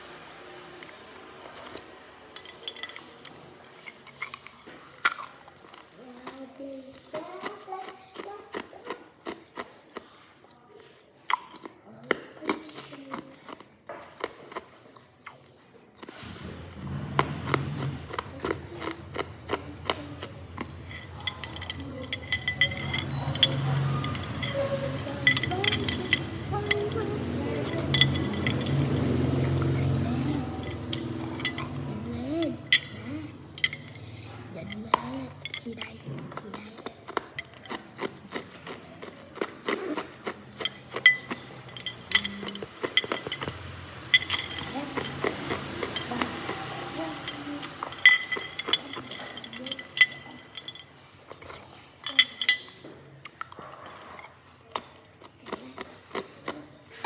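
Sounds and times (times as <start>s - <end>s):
ice being chewed: 0.0s - 57.0s
ringing ice clinks: 20.5s - 35.8s, 40.6s - 51.0s, 52.0s - 52.9s.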